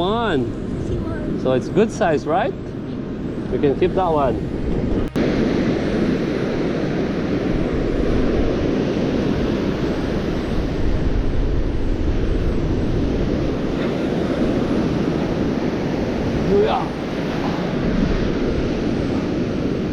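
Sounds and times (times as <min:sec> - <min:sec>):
wind buffeting microphone: 0:00.0 - 0:19.9.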